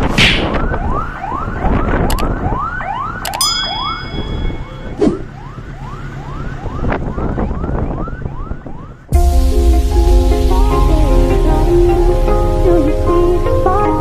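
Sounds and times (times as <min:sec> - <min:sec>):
low wind rumble: 0:00.0 - 0:14.0
sharp metallic clang: 0:03.3 - 0:05.2.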